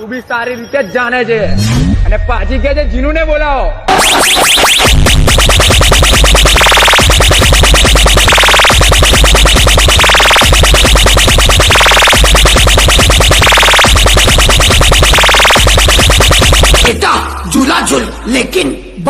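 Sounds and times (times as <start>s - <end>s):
loud electronic dance music: 3.9s - 18.3s.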